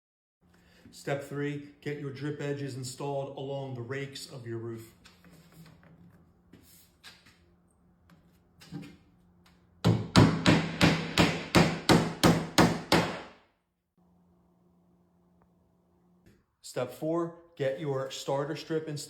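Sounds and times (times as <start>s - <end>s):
hammer driving a nail: 9.8s - 13.4s.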